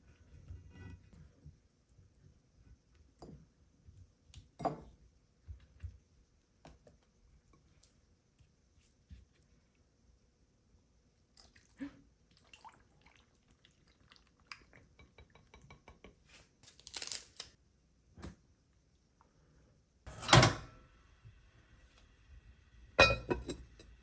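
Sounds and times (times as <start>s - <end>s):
dishes clattering: 20.1s - 20.7s, 23.0s - 23.9s.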